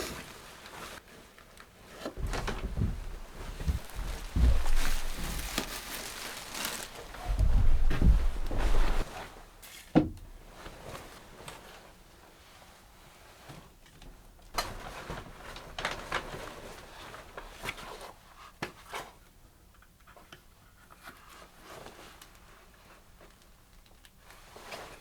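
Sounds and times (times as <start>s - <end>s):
sharp knocks: 2.2s - 5.8s, 7.1s - 9.1s.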